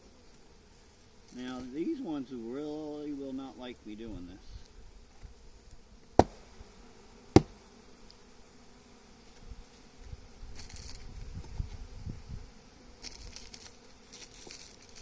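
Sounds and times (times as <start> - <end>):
honeybees buzzing: 0.0 - 15.0
dull knocks of hive parts: 6.2 - 6.5, 7.3 - 7.6.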